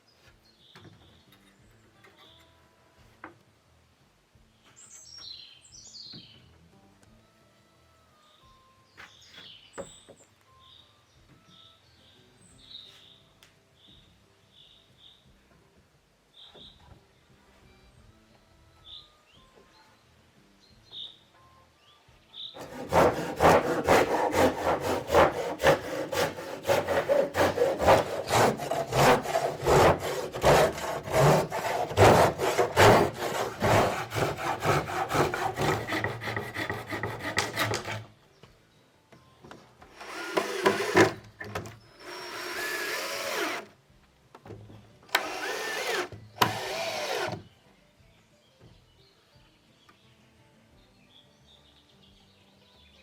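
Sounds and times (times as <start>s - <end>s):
hand saw cutting wood: 22.6s - 38.1s, 40.0s - 41.3s, 42.0s - 43.7s, 45.2s - 47.4s.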